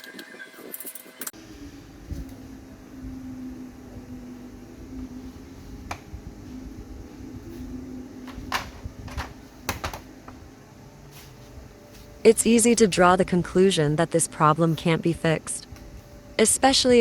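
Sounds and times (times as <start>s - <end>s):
steady low hum: 1.3s - 17.0s.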